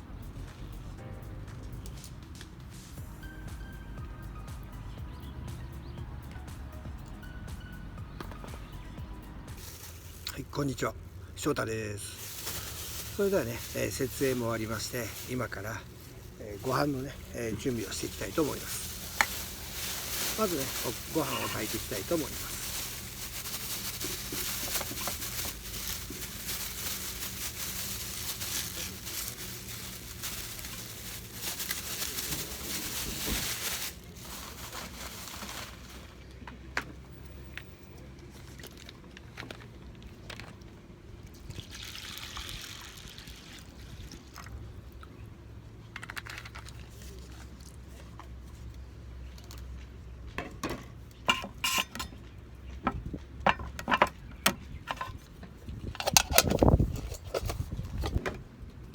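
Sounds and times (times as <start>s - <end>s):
water pouring: 41.5s - 44.5s.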